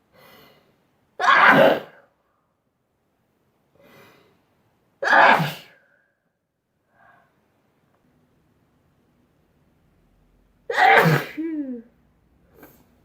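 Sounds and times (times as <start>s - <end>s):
person sneezing: 1.2s - 2.1s, 5.0s - 5.8s, 10.7s - 11.8s.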